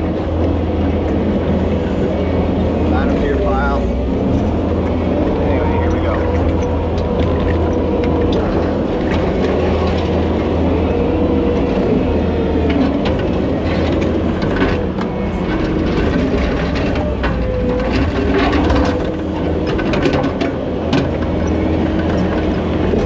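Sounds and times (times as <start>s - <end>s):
wavering whine: 0.0s - 19.8s
diesel engine running under load: 0.0s - 23.0s
knocks and clatter: 4.3s - 10.4s, 12.6s - 23.0s.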